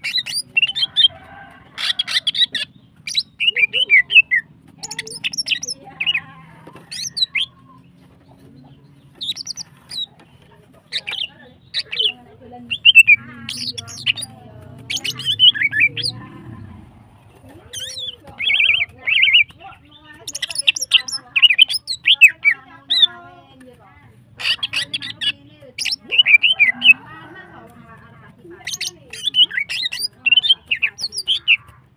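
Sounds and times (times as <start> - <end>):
bird chirping and whistling: 0.0 - 1.1, 1.8 - 6.2, 9.2 - 10.1, 12.7 - 14.3, 14.9 - 16.2, 17.8 - 19.5, 20.2 - 23.1, 24.4 - 27.0, 28.6 - 31.6.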